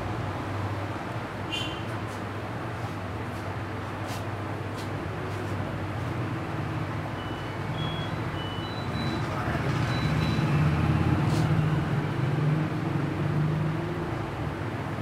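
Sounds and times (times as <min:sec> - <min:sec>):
passing vehicle engine rumble: 0:04.7 - 0:15.0
short high beeps: 0:07.2 - 0:09.2.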